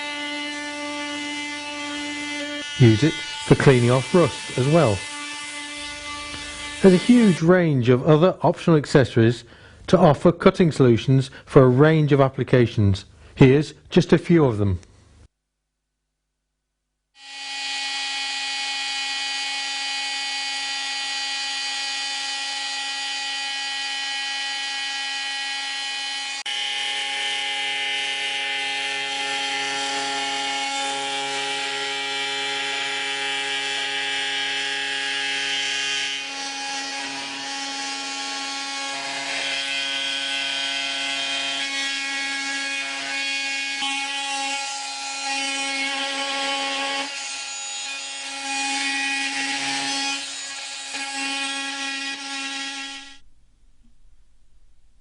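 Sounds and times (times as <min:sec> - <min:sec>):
oscillating multi-tool buzzing whine: 0:00.0 - 0:07.2, 0:17.2 - 0:53.2.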